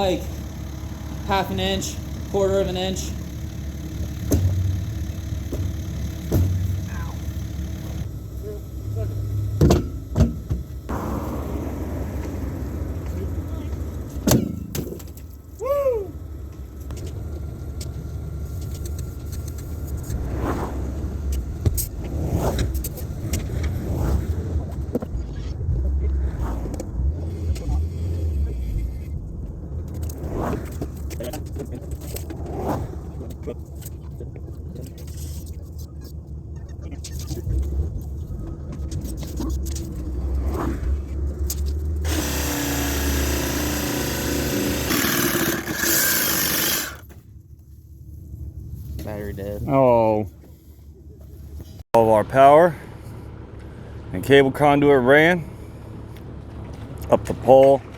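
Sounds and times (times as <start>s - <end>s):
diesel engine low rumble: 0.0s - 57.9s.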